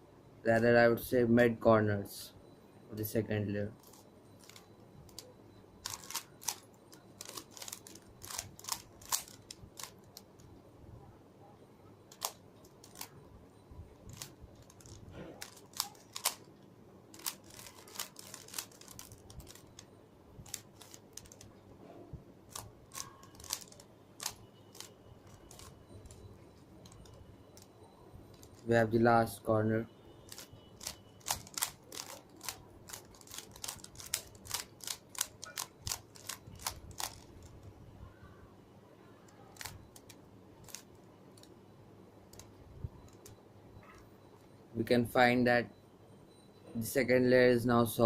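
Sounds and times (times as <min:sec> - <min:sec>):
puzzle cube clicking as turned: 0:03.8 - 0:10.5, 0:12.1 - 0:13.1, 0:14.1 - 0:16.5, 0:17.1 - 0:21.5, 0:22.5 - 0:26.2, 0:26.8 - 0:27.7, 0:28.3 - 0:28.7, 0:30.3 - 0:37.6, 0:39.3 - 0:41.5, 0:43.1 - 0:43.4.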